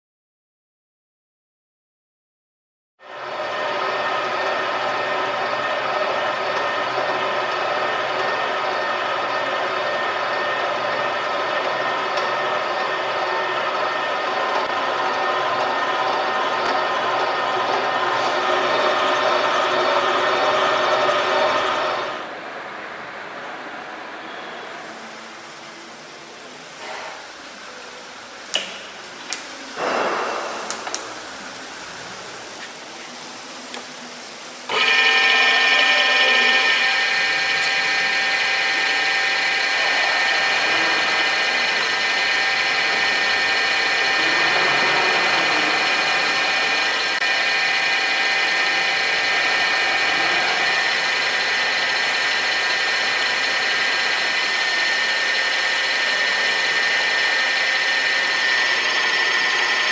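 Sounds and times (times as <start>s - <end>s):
milling machine spindle whining: 3.0s - 22.3s, 34.6s - 59.9s.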